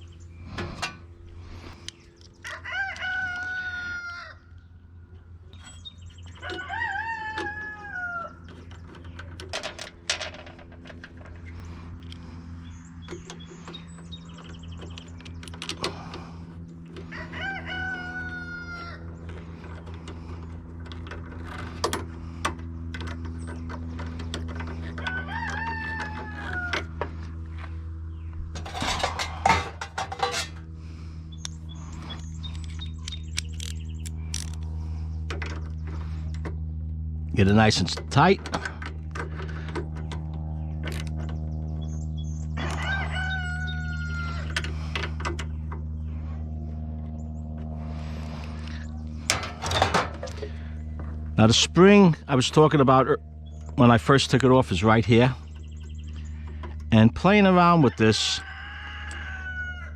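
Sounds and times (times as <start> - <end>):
steady low hum: 0.0 - 59.9
rooster crowing: 2.4 - 4.5, 6.3 - 8.5, 17.1 - 19.1, 24.9 - 27.2, 42.6 - 44.6, 57.8 - 59.9.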